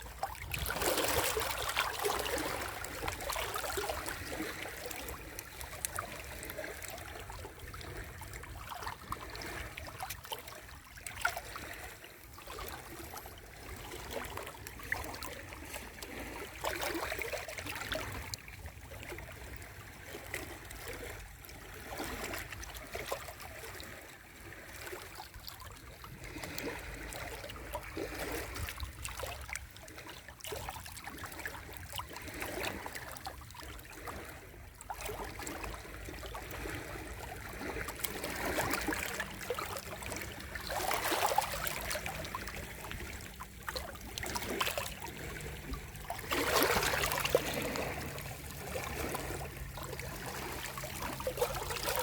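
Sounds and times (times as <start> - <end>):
sea waves washing onto shore: 35.7 - 52.0.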